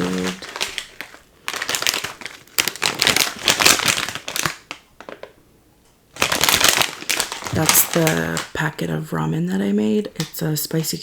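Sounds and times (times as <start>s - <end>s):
plastic packet crinkling: 0.0s - 5.4s, 6.1s - 9.1s.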